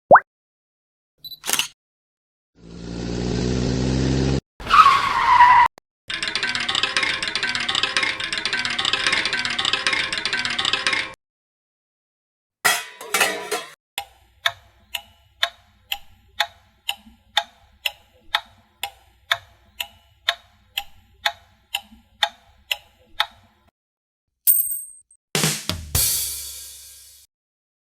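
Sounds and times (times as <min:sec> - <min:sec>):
clock ticking: 0:14.0 - 0:23.6.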